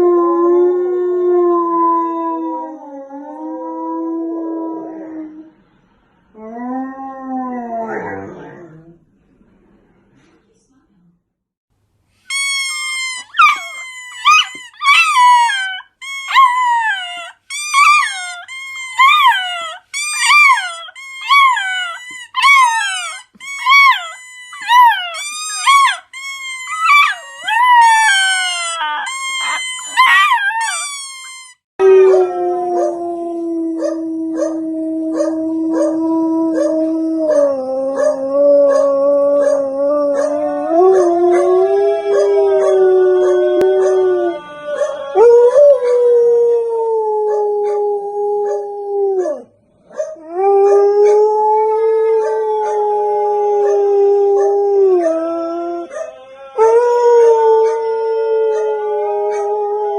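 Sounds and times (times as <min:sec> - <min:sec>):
dogs howling: 0:13.3 - 0:30.9, 0:31.8 - 0:59.9.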